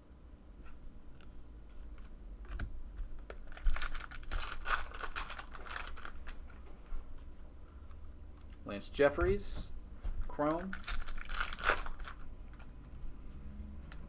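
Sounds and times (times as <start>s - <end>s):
foil wrapper crinkling: 3.3s - 6.6s, 10.3s - 12.7s.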